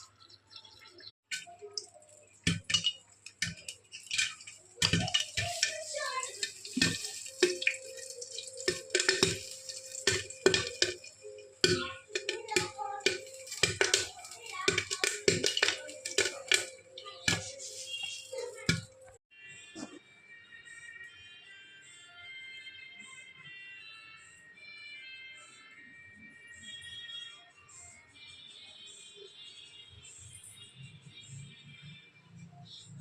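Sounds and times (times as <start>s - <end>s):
popcorn popping in a pan: 0.0s - 19.2s.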